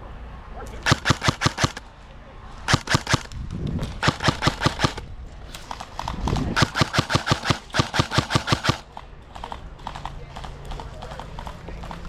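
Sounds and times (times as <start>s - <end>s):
airsoft rifle firing bursts: 0.8s - 1.8s, 2.6s - 3.3s, 4.0s - 9.0s.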